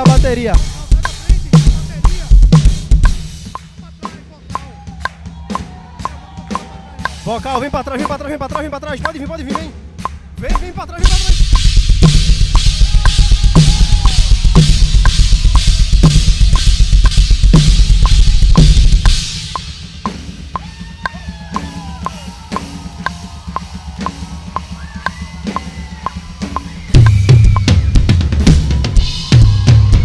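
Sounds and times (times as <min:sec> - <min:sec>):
drum solo: 0:00.0 - 0:30.0
held tones: 0:10.5 - 0:19.7, 0:26.0 - 0:27.8.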